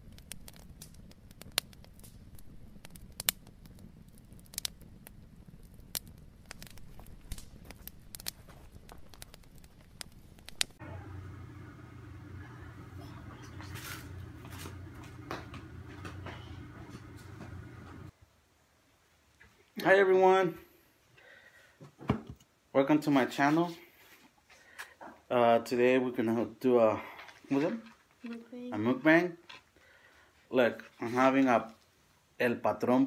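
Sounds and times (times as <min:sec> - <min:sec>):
steady low hum: 0:10.4 - 0:18.1.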